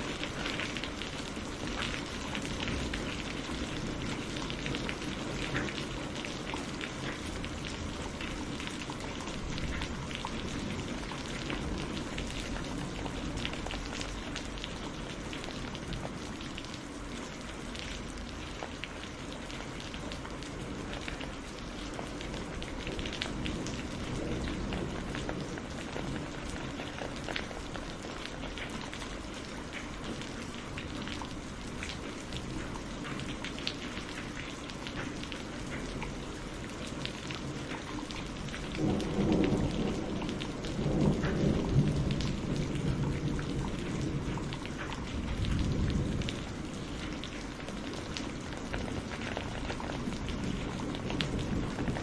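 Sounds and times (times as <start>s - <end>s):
rain drops pattering: 0.0s - 52.0s.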